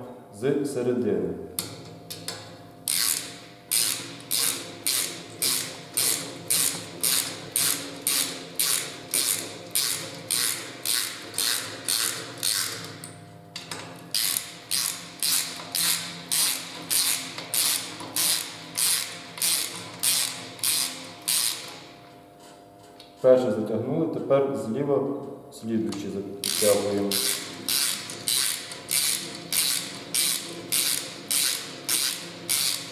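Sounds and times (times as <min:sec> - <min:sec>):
ratchet wrench clicking: 0:02.9 - 0:12.9, 0:14.1 - 0:21.8, 0:26.4 - 0:32.9.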